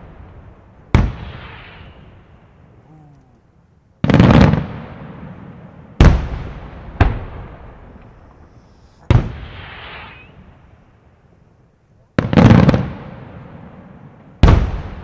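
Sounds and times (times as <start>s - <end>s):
fireworks bangs: 0.0s - 2.6s, 4.0s - 10.8s, 12.2s - 15.0s
hissing crackle: 5.7s - 13.3s.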